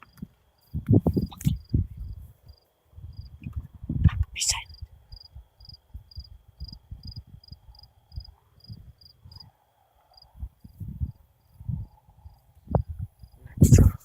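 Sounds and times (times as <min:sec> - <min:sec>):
crickets chirping: 0:00.0 - 0:14.0
high insect drone: 0:04.4 - 0:14.0.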